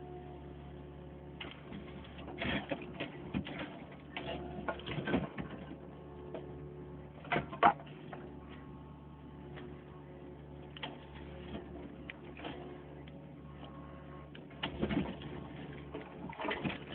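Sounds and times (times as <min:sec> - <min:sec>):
backhoe engine running: 0:00.0 - 0:16.9.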